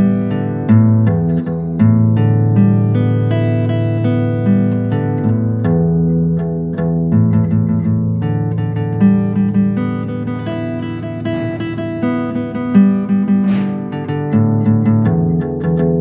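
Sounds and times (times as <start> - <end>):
guitar instrumental music: 0.0 - 16.0
rising swish: 13.4 - 14.2.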